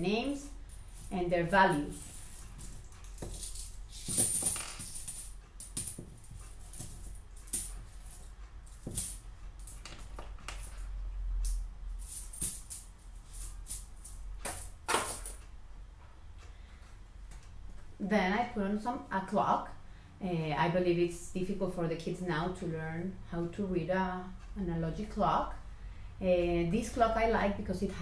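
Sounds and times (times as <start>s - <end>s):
coins clinking and jingling: 1.7s - 10.9s, 12.0s - 15.4s.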